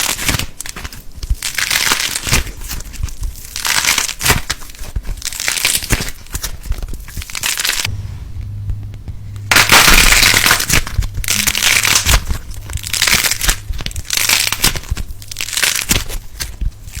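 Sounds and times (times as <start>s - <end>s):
fidget toy crinkling: 0.0s - 7.9s, 9.5s - 17.0s
low steady hum: 6.4s - 17.0s.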